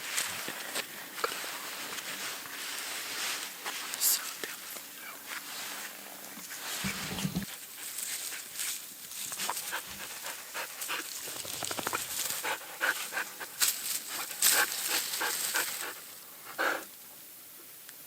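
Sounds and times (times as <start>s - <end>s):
dog panting: 9.4s - 16.9s.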